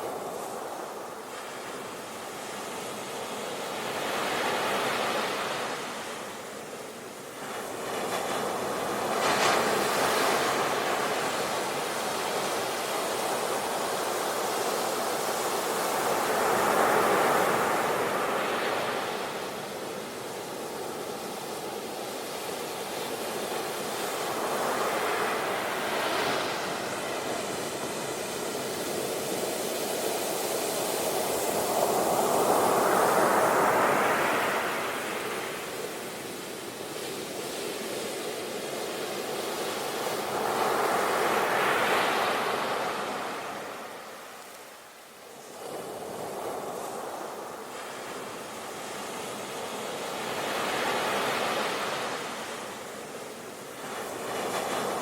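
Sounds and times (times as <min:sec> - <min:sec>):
sea waves breaking on shore: 0:00.0 - 0:55.0.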